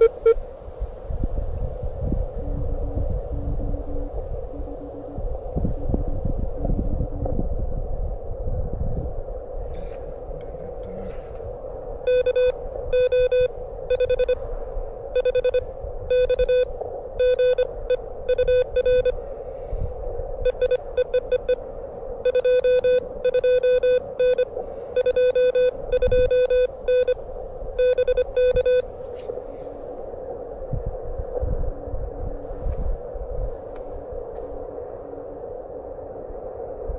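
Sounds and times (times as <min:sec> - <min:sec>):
morse code tone: 0:00.0 - 0:00.4, 0:12.1 - 0:14.4, 0:15.2 - 0:19.2, 0:20.5 - 0:21.6, 0:22.2 - 0:27.2, 0:27.8 - 0:28.9
radio receiver noise: 0:00.0 - 0:00.4, 0:12.1 - 0:14.4, 0:15.2 - 0:19.2, 0:20.5 - 0:21.6, 0:22.2 - 0:27.2, 0:27.8 - 0:28.9.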